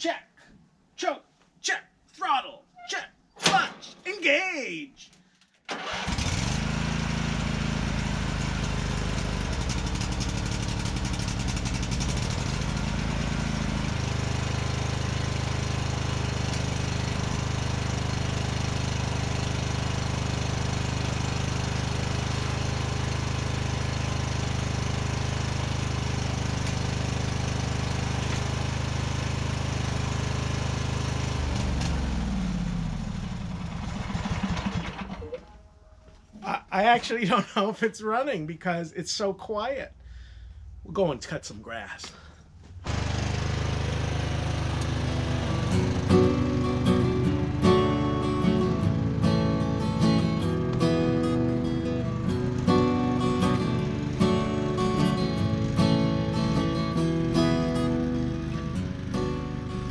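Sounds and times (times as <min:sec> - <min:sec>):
riding mower engine running: 0:05.7 - 0:35.5, 0:42.1 - 0:59.9.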